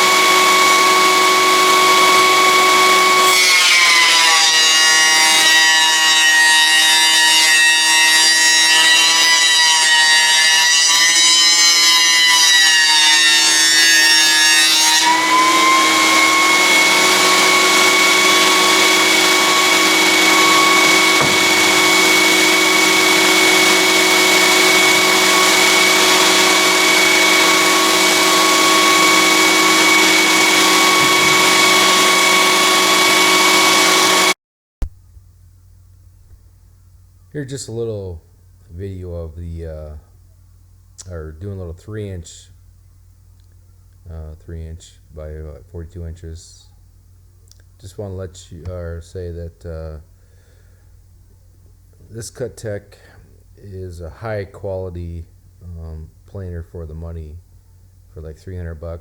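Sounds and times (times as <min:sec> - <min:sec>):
jointer planer cutting wood: 0:00.0 - 0:34.4.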